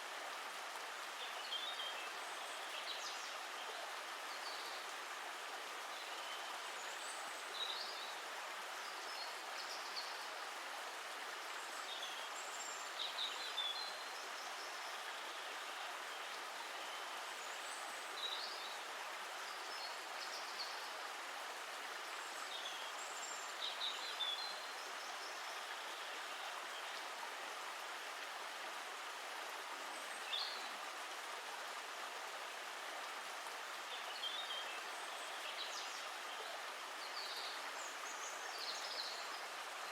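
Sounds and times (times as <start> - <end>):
stream of water running: 0.0 - 39.9.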